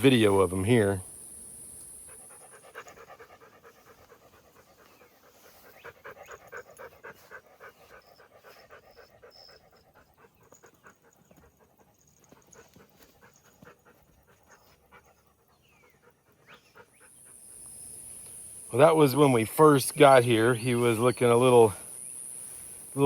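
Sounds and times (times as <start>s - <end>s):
dog panting: 1.8s - 17.8s.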